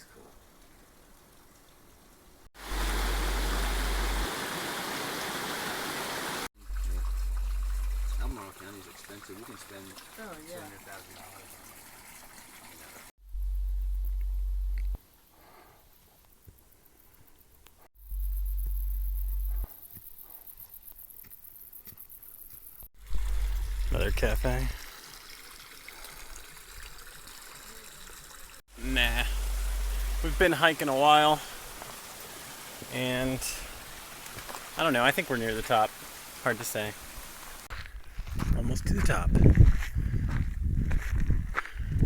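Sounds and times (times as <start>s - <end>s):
mountain stream rushing: 2.6s - 6.5s, 28.7s - 37.7s
deep rumble: 6.6s - 8.3s, 13.2s - 15.0s, 18.0s - 19.7s, 23.0s - 24.8s, 28.8s - 30.4s
wind buffeting microphone: 37.9s - 42.0s.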